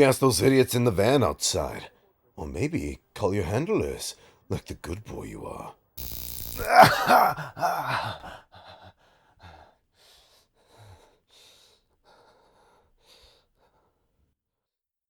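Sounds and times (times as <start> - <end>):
man gasping: 6.6 - 13.9
man breathing raggedly: 6.9 - 14.0.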